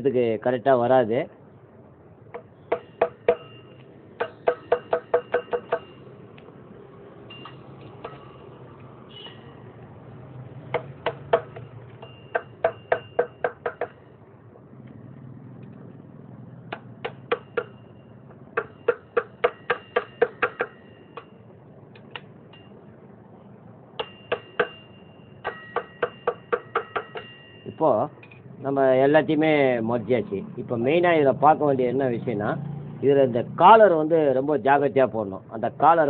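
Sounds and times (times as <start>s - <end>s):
hammer tapping on metal: 2.3s - 6.1s, 7.3s - 8.5s, 10.7s - 14.1s, 16.7s - 22.8s, 24.0s - 28.4s.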